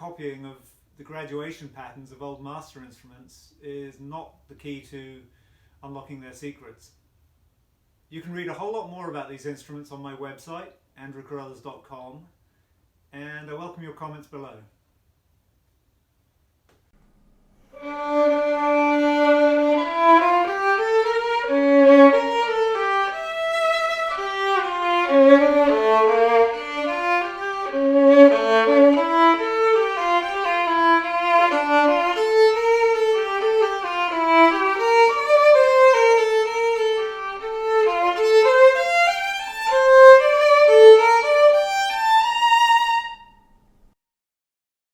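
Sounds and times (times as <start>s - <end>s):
solo violin melody: 17.7s - 43.6s.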